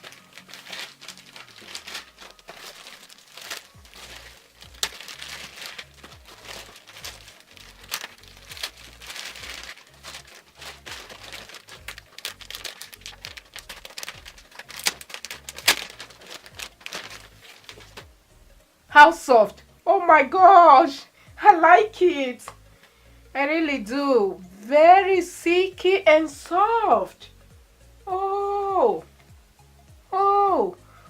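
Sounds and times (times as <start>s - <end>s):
packaging crinkling and crackling: 0.0s - 18.2s
background music with bass line: 0.0s - 19.9s, 21.3s - 23.4s, 24.2s - 31.0s.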